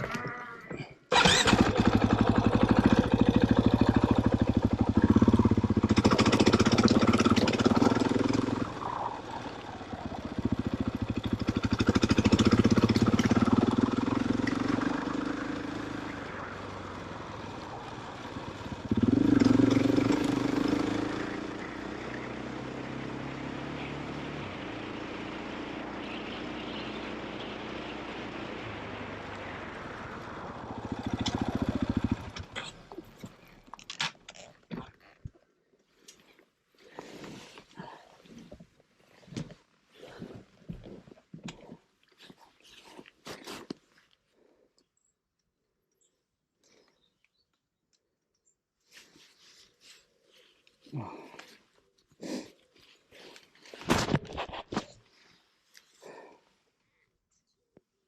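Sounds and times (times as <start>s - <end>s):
motorcycle engine revving: 1.1s - 33.2s.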